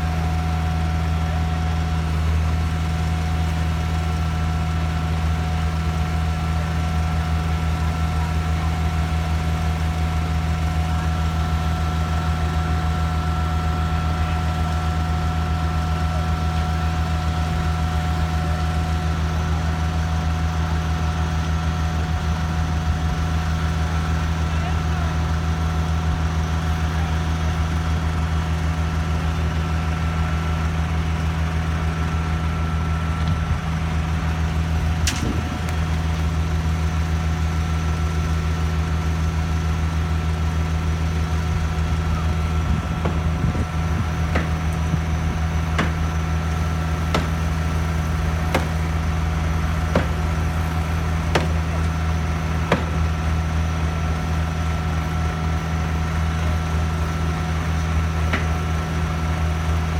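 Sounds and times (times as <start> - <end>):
machine engine droning: 0.0 - 59.9
sharp knocks: 44.2 - 44.9, 45.7 - 46.2, 47.0 - 47.8, 48.4 - 49.0, 49.8 - 51.9, 52.7 - 53.2.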